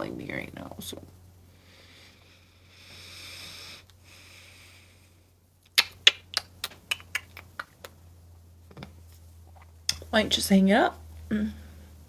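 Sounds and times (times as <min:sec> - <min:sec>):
soft breathy hiss: 0:00.6 - 0:05.4.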